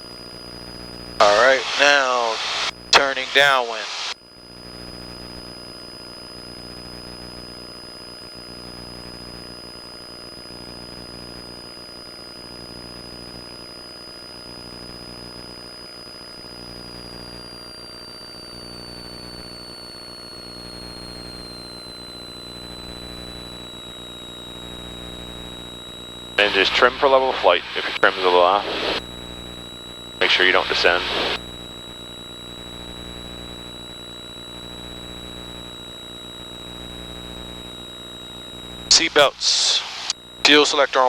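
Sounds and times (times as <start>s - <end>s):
high thin whine: 1.2s - 4.2s, 26.4s - 29.0s, 30.2s - 31.4s, 38.9s - 41.0s
airplane engine droning: 26.4s - 29.0s.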